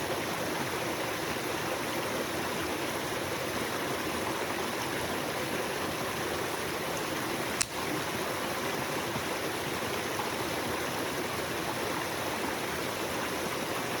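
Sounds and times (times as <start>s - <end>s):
small stream flowing: 0.0s - 14.0s
sharp click: 7.6s - 7.8s.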